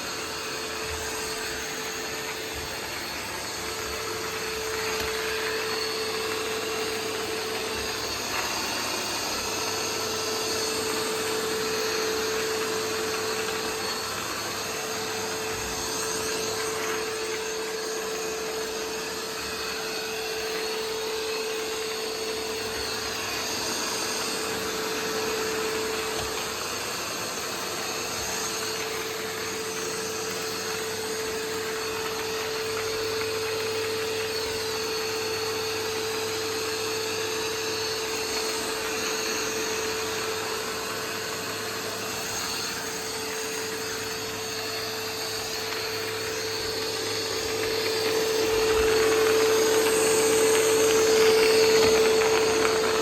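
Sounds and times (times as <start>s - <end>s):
robot vacuum whirring: 0.0s - 53.0s.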